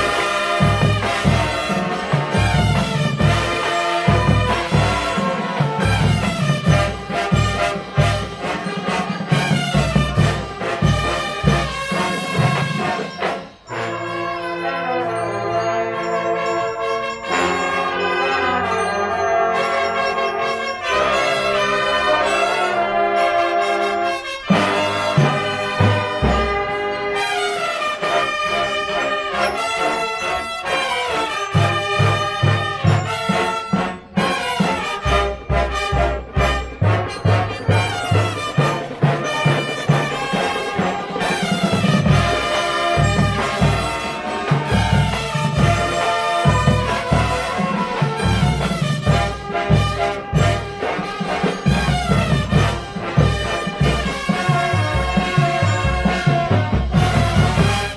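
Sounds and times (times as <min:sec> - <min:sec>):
bass drums and percussion: 0:00.0 - 0:13.4, 0:31.2 - 0:57.9
brass chords: 0:00.0 - 0:57.9.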